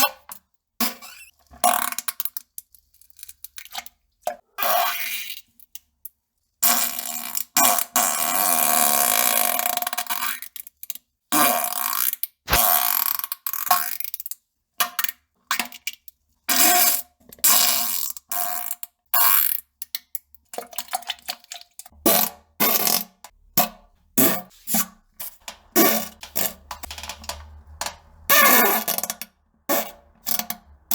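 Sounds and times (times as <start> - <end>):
fart sound effects: 12.5 - 12.8.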